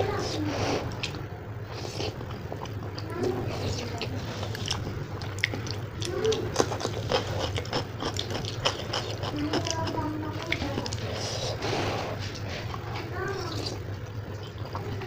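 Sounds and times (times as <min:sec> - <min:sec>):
chewing noodles with mouth clicks: 0:00.8 - 0:15.0.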